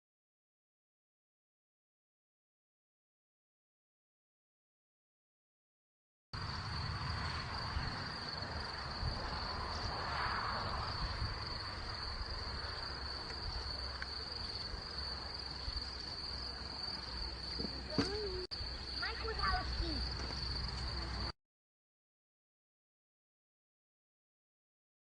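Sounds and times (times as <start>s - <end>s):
insects chirring: 6.4s - 21.3s.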